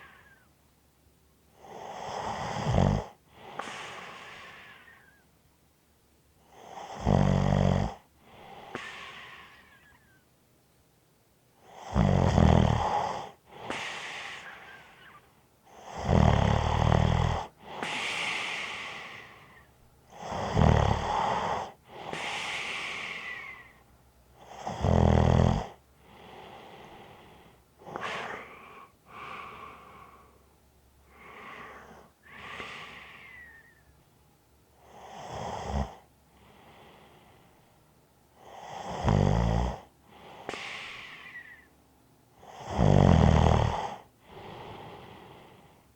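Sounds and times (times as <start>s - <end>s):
person snoring: 1.6s - 5.1s, 6.5s - 10.0s, 11.7s - 15.2s, 15.8s - 23.7s, 24.4s - 30.4s, 34.8s - 37.2s, 38.4s - 41.7s, 42.4s - 45.6s
whistling breath: 17.8s - 19.7s, 22.2s - 23.8s, 31.6s - 34.0s, 40.5s - 41.8s.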